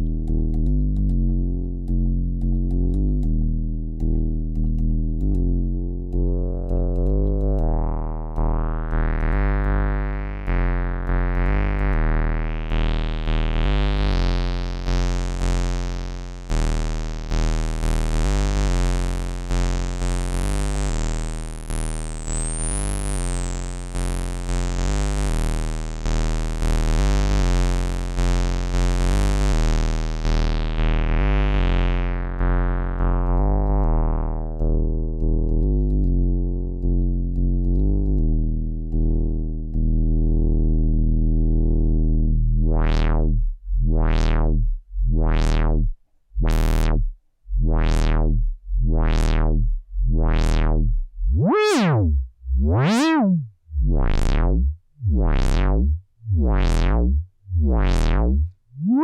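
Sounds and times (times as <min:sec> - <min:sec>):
analog synthesizer bass notes: 0:00.0 - 0:59.0.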